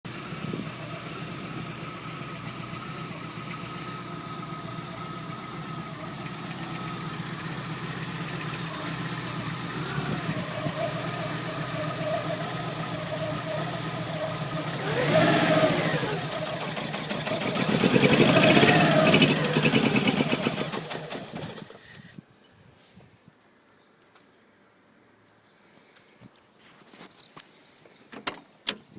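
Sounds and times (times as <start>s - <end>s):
car engine idling and revving: 0.1s - 22.2s.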